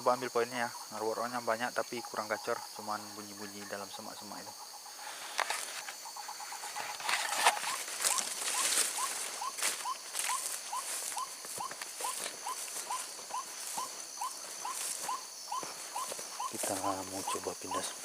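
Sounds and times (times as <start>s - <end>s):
rustles and clicks: 6.7s - 13.0s.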